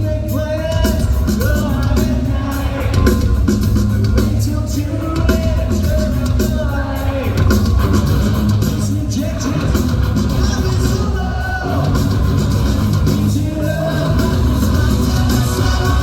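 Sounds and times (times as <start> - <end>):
bass guitar: 0.0 - 16.0
distorted electric guitars: 0.0 - 16.0
drums: 0.0 - 16.0
person singing: 13.1 - 16.0.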